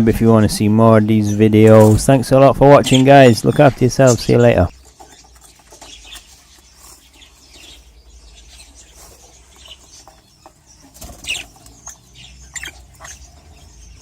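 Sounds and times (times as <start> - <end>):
budgerigars chirping: 0.3 - 14.0
wing flapping: 9.0 - 13.3.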